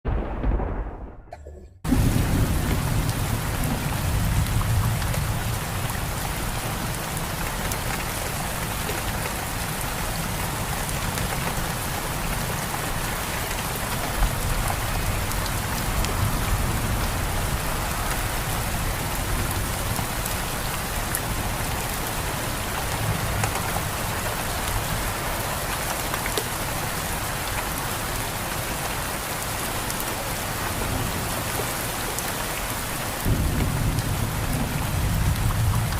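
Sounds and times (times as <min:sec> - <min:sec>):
thunder rumble: 0:00.0 - 0:06.9
heavy rain pouring: 0:00.1 - 0:35.9.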